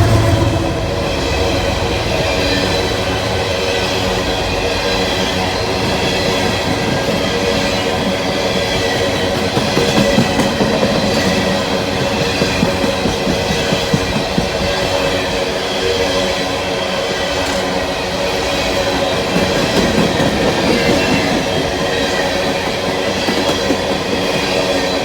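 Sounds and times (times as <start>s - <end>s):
train wheels rumbling on rails: 0.0s - 25.0s
wheels clacking over rail joints: 0.0s - 25.0s.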